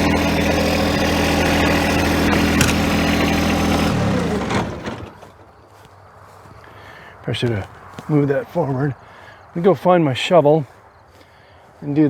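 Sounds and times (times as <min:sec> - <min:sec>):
clunk: 0:00.0 - 0:05.5
tractor diesel engine idling: 0:00.0 - 0:05.6.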